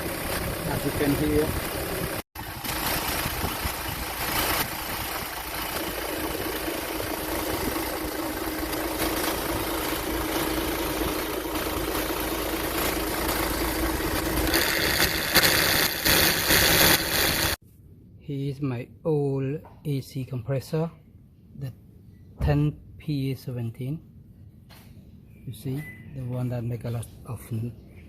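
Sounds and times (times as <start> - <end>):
diesel engine hum: 0.0 - 17.6
mechanical noise from compressor: 0.0 - 17.6.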